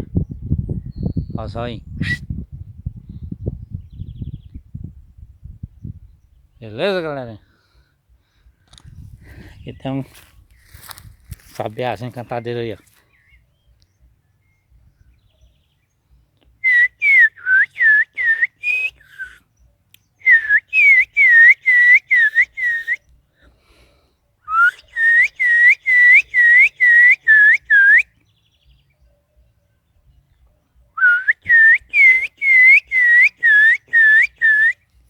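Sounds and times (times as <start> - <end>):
thrush singing whistled notes: 16.6 - 23.2, 24.5 - 29.6, 30.9 - 35.0.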